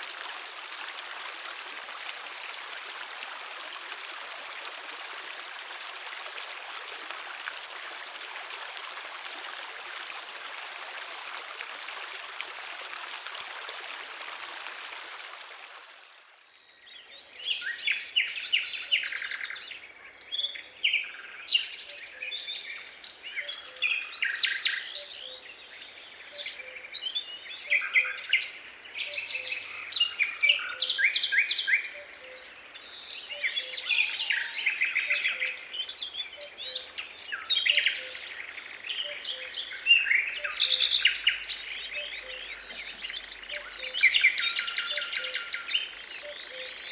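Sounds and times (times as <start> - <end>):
running water rushing: 0.0 - 16.6.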